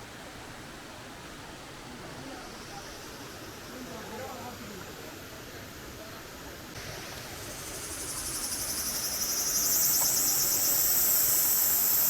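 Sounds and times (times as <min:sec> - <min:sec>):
insects buzzing: 0:06.8 - 0:12.0.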